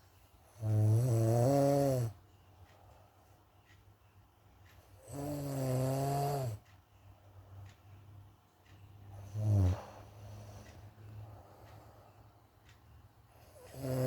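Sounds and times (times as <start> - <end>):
person snoring: 0.6 - 2.2, 5.0 - 6.6, 9.2 - 10.6, 13.5 - 14.0.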